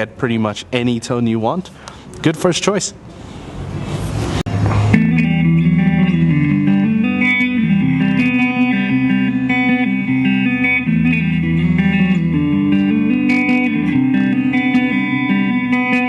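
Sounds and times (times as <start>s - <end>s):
electric guitar playing: 4.5s - 16.0s.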